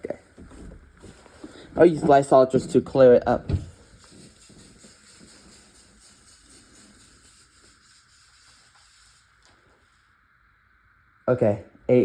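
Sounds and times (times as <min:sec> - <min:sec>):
aerosol spray hissing: 0:01.8 - 0:09.6.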